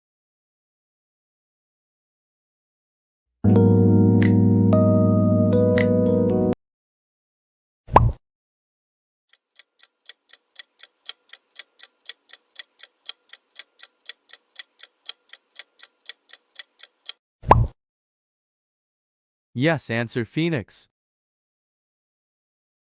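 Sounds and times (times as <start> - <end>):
clock ticking: 9.3 - 17.2.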